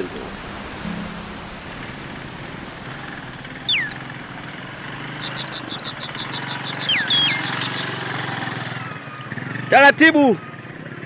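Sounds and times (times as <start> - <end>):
steady high hiss: 0.0 - 8.6
engine idling: 1.6 - 11.0
bird whistle sliding downward: 3.6 - 4.2, 4.9 - 8.9
bird chattering run of high notes: 3.7 - 4.2, 4.9 - 8.3.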